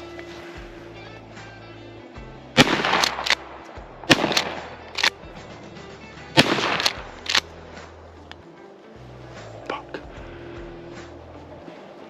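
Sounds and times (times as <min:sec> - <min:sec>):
background music: 0:00.0 - 0:12.0
shotgun blasts: 0:02.5 - 0:05.2, 0:06.3 - 0:07.5
sharp short cracks: 0:02.6 - 0:05.3, 0:06.3 - 0:08.4.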